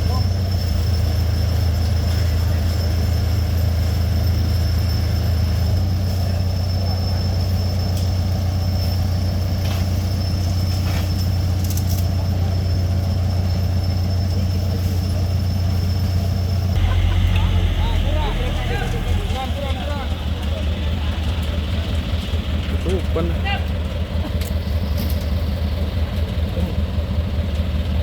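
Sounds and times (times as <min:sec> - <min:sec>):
diesel engine drone: 0:00.0 - 0:28.0
thin high whine: 0:16.8 - 0:19.8.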